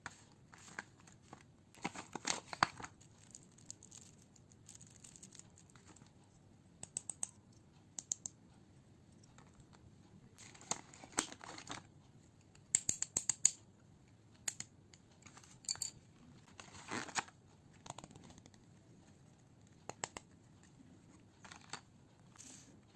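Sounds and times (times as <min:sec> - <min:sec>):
packaging crinkling and rustling: 0:00.6 - 0:06.1, 0:10.4 - 0:11.9
small clicks and taps: 0:06.8 - 0:08.4, 0:14.4 - 0:15.4, 0:17.7 - 0:18.7, 0:19.6 - 0:20.8.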